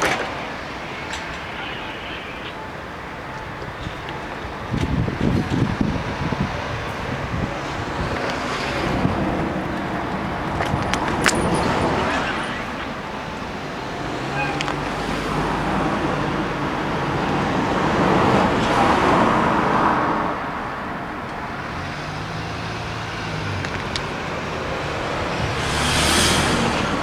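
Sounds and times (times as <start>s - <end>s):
low engine hum of vehicles: 0.0s - 27.0s
car driving past: 21.6s - 27.0s.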